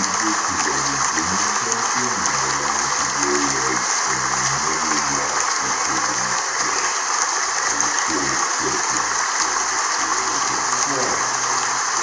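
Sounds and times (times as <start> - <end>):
crowd applauding: 0.0 - 12.0
faint voices: 0.0 - 12.0.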